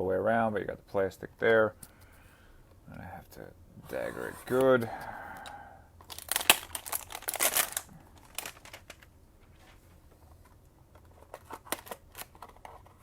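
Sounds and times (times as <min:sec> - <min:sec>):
plastic wrap crinkling and tearing: 0:05.4 - 0:09.1.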